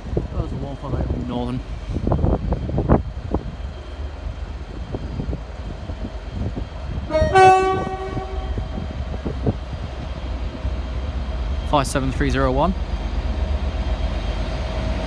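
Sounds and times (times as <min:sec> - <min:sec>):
low train rumble: 0:00.0 - 0:15.0
train horn: 0:07.1 - 0:09.4.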